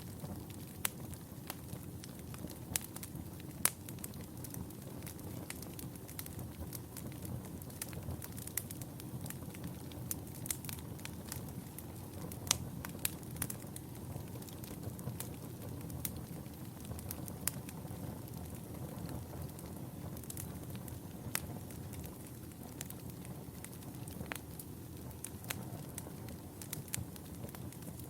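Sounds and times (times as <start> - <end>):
fire crackling and popping: 0.0 - 28.0
fire rumbling: 0.0 - 28.0.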